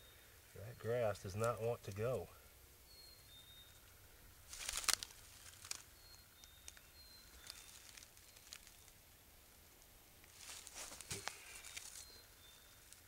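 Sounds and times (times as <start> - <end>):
bird chirping: 0.0 - 9.0, 10.8 - 13.0
dry grass rustling and crackling: 3.6 - 13.0.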